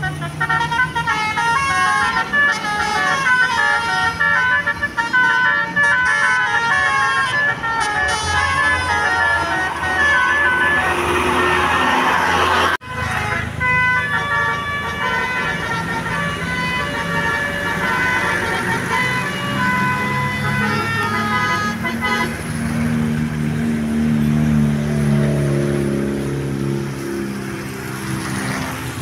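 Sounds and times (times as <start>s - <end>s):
bus horn playing a tune: 0.0s - 23.0s.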